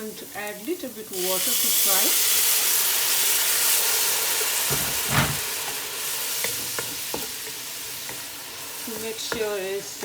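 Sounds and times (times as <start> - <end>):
spices sizzling in hot oil: 0.0 - 10.0
spoon knocking and scraping pan: 4.6 - 9.9.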